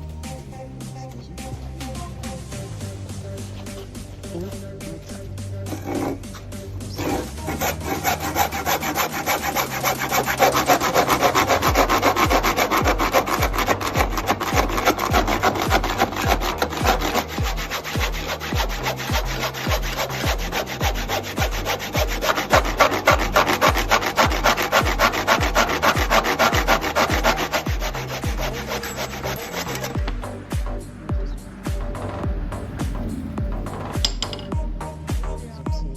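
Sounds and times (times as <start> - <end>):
hand saw cutting wood: 3.6 - 30.4.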